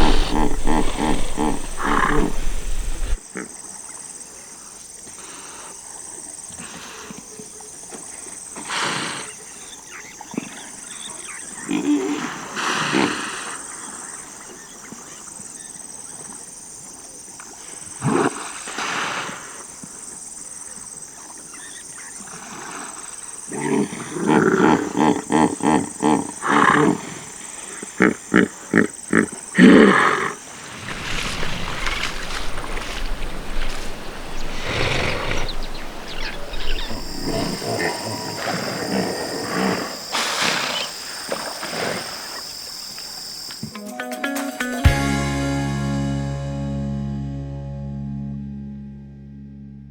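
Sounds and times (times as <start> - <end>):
steady high-pitched hum: 0.0 - 3.2
hippopotamus grunting: 0.0 - 3.6, 23.5 - 42.4
steady high-pitched drone: 37.0 - 40.2.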